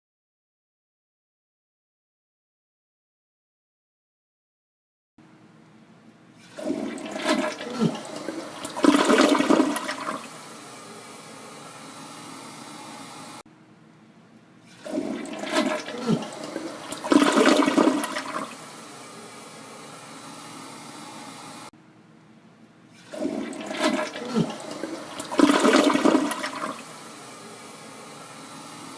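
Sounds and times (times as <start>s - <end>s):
toilet flushing: 6.4s - 13.4s, 14.7s - 21.7s, 23.0s - 28.9s.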